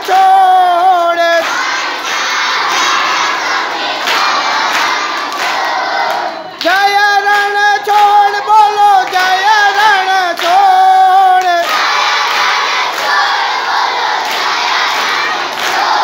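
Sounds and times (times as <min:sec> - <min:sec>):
high voice chanting: 0:00.0 - 0:01.6, 0:06.3 - 0:11.9.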